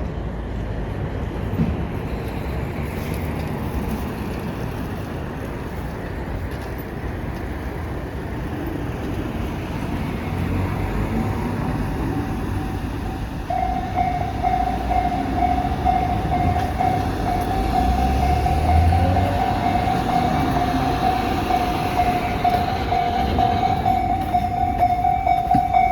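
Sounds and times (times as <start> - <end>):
diesel locomotive rumble: 0.0 - 25.9
traffic: 0.0 - 25.9
level-crossing warning bell: 11.2 - 25.9.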